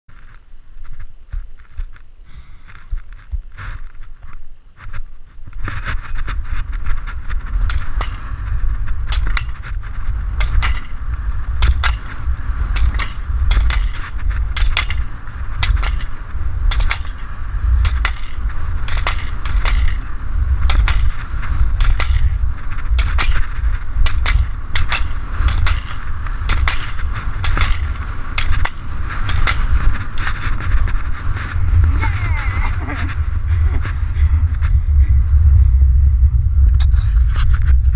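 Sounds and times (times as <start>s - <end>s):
skis scraping on snow: 0.1s - 35.6s
wind rumble on microphone: 0.1s - 37.9s
gate poles being struck: 9.1s - 9.7s, 10.4s - 11.0s, 11.6s - 21.2s, 21.8s - 30.3s.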